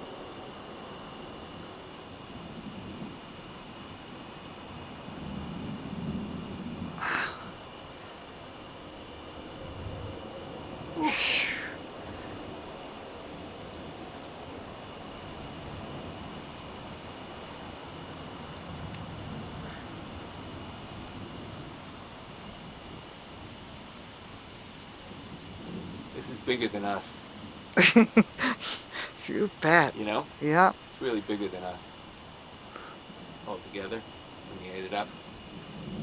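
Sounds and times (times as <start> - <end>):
crickets trilling: 0.0 - 36.0.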